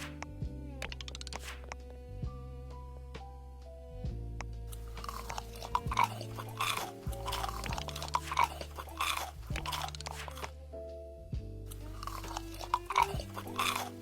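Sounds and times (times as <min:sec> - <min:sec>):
background music: 0:00.0 - 0:14.0
crunchy chewing of food: 0:04.7 - 0:10.5, 0:11.7 - 0:14.0.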